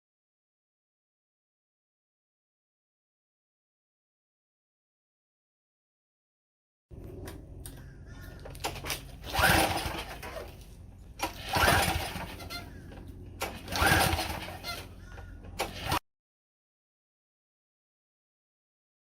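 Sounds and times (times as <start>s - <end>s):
engine pull-start cranking: 8.4s - 16.0s.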